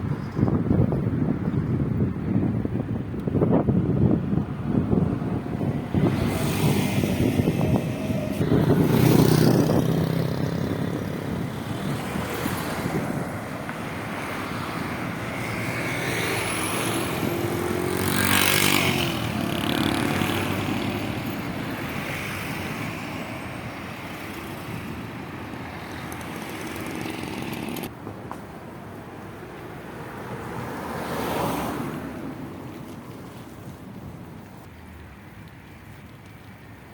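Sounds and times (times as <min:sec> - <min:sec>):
wind on microphone: 0:00.0 - 0:28.0
vehicles passing: 0:00.0 - 0:36.9.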